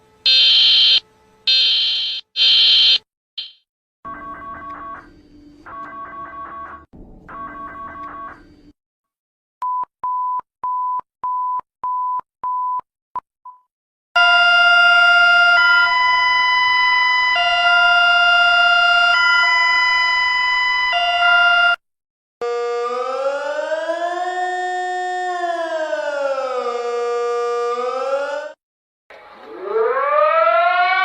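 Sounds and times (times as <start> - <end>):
alarm alternating two chords: 0.3 - 5.1
short high beeps: 2.0 - 3.6.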